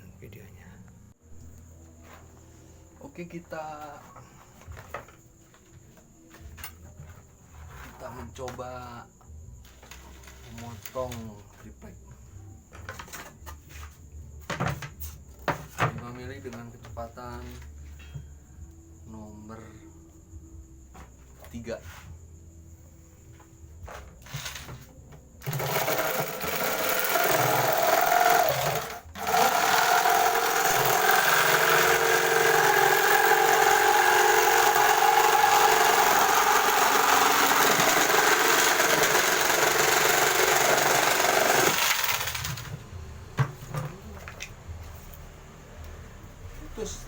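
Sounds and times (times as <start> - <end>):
jigsaw cutting plywood: 25.4 - 42.7.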